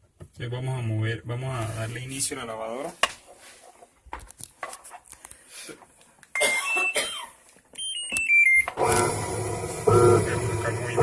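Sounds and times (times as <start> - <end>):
washing machine hum: 8.8 - 11.0.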